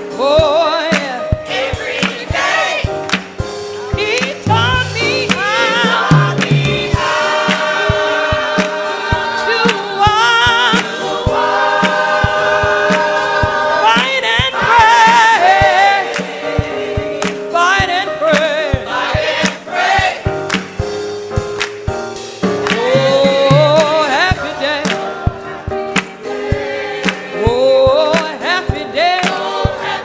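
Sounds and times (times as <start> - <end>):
gospel choir singing: 1.0 - 20.5, 22.6 - 30.0
sharp percussive hits: 2.0 - 9.8.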